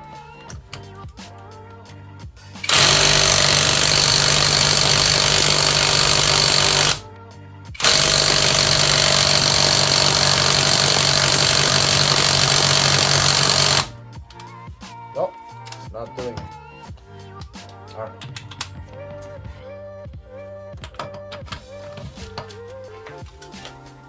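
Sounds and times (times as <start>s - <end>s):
impact driver hammering on bolt: 2.6s - 7.0s, 7.8s - 13.9s.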